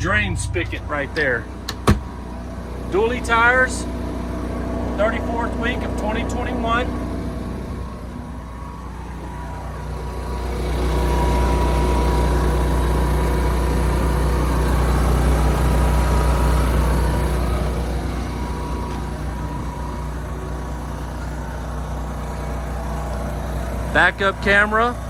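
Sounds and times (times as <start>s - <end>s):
diesel engine idling: 0.0s - 25.0s
generator running: 0.0s - 25.0s.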